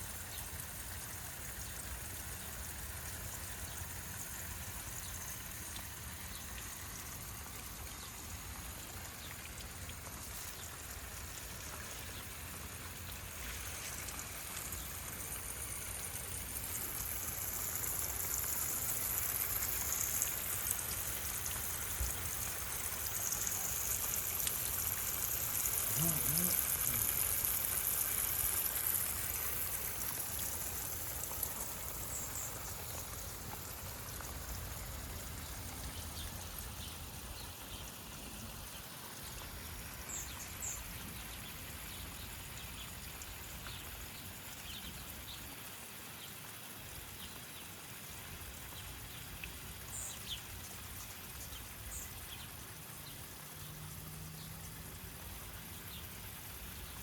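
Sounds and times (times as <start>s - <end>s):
running trickling water: 0.0s - 57.0s.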